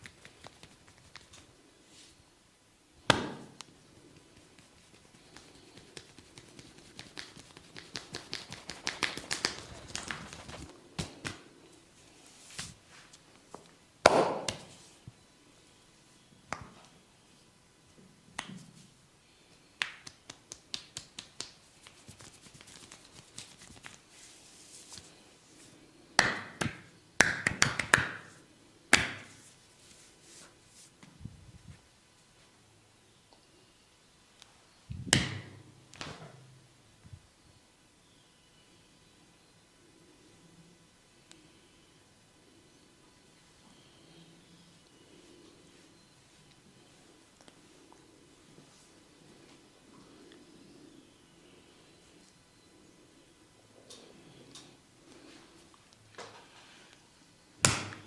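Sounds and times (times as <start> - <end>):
hair cracking and snapping: 0.0 - 1.5, 3.6 - 11.4, 19.8 - 24.0.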